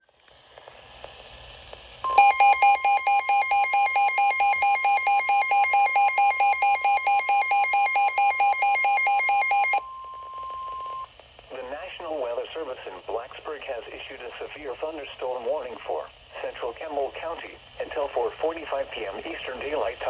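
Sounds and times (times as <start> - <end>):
steady alarm tone: 2.1 - 9.8
rapid electronic beeping: 2.2 - 9.8.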